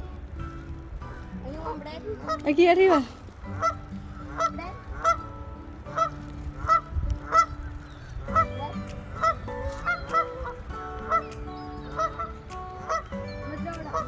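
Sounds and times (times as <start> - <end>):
geese honking: 2.2 - 14.0.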